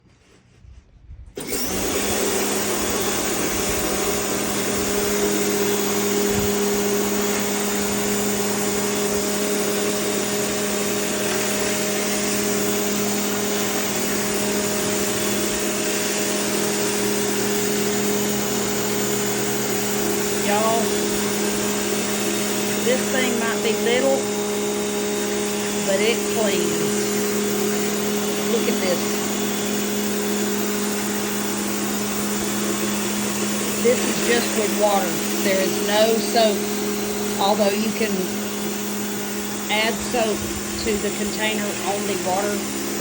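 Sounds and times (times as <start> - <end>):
pressure washer motor hum: 1.4 - 43.0.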